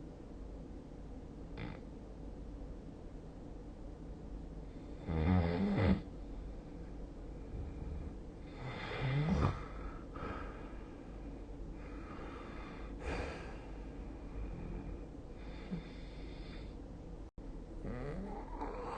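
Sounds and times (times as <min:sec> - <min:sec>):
person snoring: 0:05.0 - 0:06.1, 0:07.5 - 0:10.8, 0:11.8 - 0:13.8, 0:14.4 - 0:16.7, 0:17.8 - 0:18.9.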